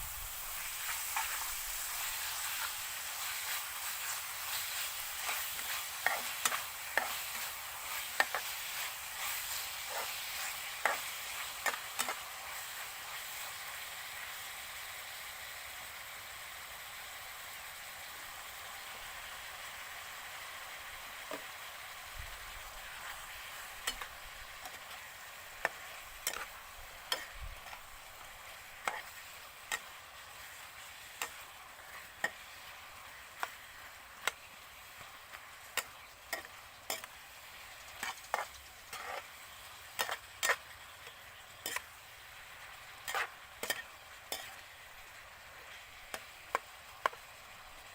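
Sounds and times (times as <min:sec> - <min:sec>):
stir-fry sizzling in a pan: 0:00.0 - 0:47.9.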